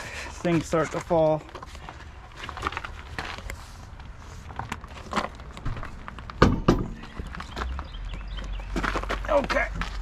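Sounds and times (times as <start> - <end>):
tire knocks and scuffs: 0.3 - 10.0
tire thumping down: 4.5 - 10.0.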